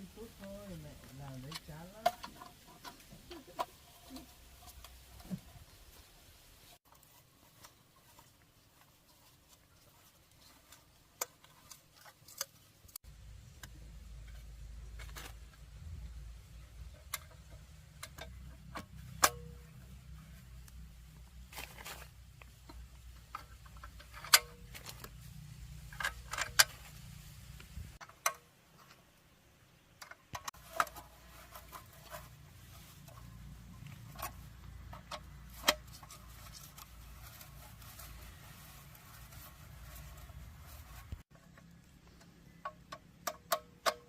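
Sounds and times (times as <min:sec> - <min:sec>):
clinks of tools and engine parts: 0:16.7 - 0:27.0, 0:29.9 - 0:40.5, 0:41.2 - 0:44.0.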